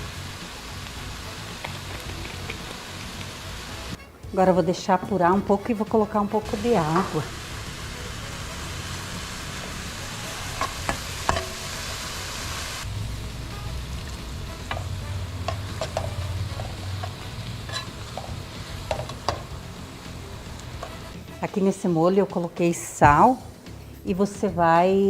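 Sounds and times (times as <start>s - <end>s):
sauce sizzling in a frying pan: 0.0s - 4.0s, 6.4s - 21.4s.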